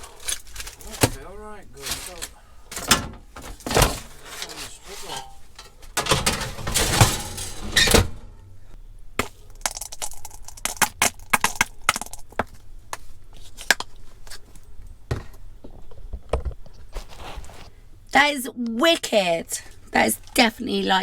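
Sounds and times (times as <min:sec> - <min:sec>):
rustling: 0:00.0 - 0:10.8, 0:15.7 - 0:17.8
kitchenware clicks and clinks: 0:01.8 - 0:08.3.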